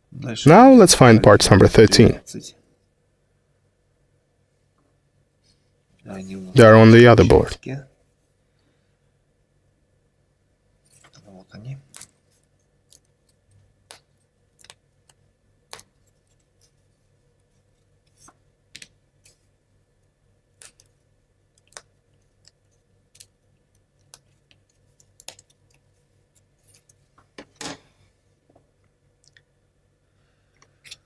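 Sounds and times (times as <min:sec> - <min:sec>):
thin wood clicking and snapping: 0:21.6 - 0:25.8.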